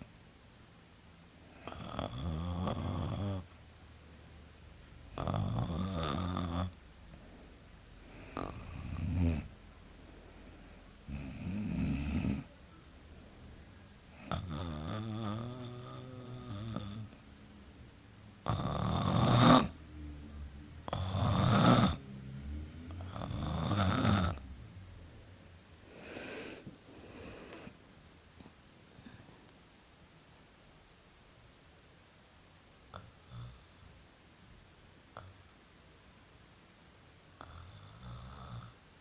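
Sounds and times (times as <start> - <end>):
woman snoring: 1.5 - 3.5, 5.1 - 6.8, 8.1 - 9.5, 11.0 - 12.6, 14.1 - 17.2, 18.4 - 24.5, 25.9 - 27.8.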